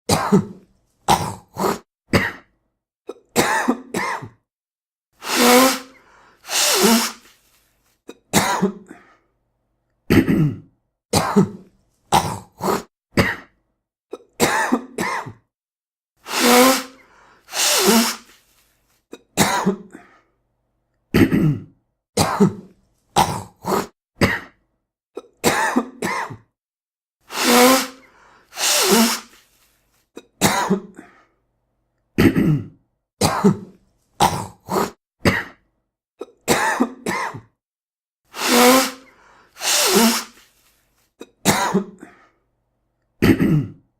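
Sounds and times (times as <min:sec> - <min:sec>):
man clearing his throat: 0:00.1 - 0:02.5, 0:03.1 - 0:04.4, 0:08.4 - 0:09.1, 0:10.1 - 0:13.5, 0:14.2 - 0:15.5, 0:19.4 - 0:20.1, 0:21.1 - 0:24.6, 0:25.2 - 0:26.5, 0:30.4 - 0:31.1, 0:32.2 - 0:35.6, 0:36.2 - 0:37.6, 0:41.4 - 0:42.2, 0:43.2 - 0:43.9
man coughing: 0:00.1 - 0:02.5, 0:03.1 - 0:04.4, 0:08.3 - 0:09.1, 0:10.1 - 0:11.6, 0:14.4 - 0:15.4, 0:19.4 - 0:20.1, 0:21.1 - 0:22.6, 0:25.4 - 0:26.5, 0:30.4 - 0:31.1, 0:32.2 - 0:35.6, 0:36.5 - 0:37.6, 0:41.4 - 0:42.2, 0:43.2 - 0:43.8
man blowing his nose: 0:05.2 - 0:07.7, 0:16.2 - 0:18.8, 0:27.2 - 0:30.0, 0:38.3 - 0:41.1.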